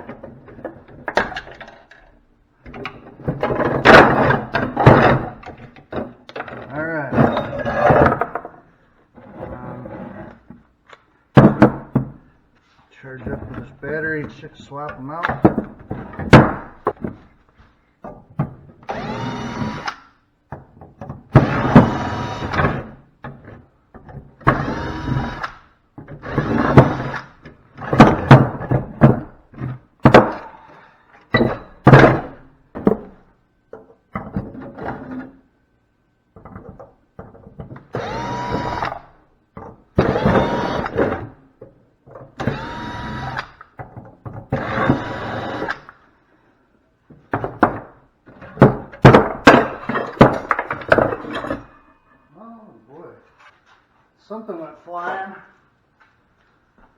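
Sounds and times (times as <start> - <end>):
cordless drill motor spinning: 18.9 - 20.0, 21.4 - 22.6, 24.5 - 25.5, 38.0 - 39.0, 40.0 - 41.0, 42.4 - 43.5, 44.6 - 45.8.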